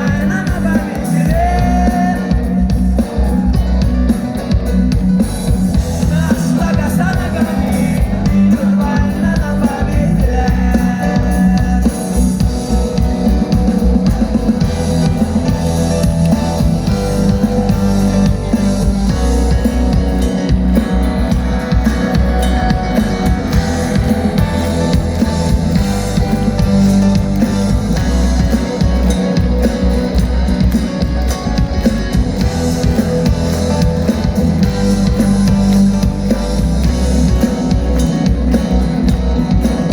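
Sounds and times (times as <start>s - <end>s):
drum kit: 0.0s - 39.9s
electric guitar: 0.0s - 39.9s.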